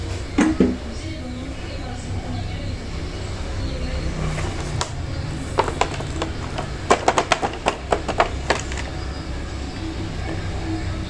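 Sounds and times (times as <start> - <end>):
steady low hum: 0.0 - 11.0
sharp taps and clicks: 5.6 - 9.1.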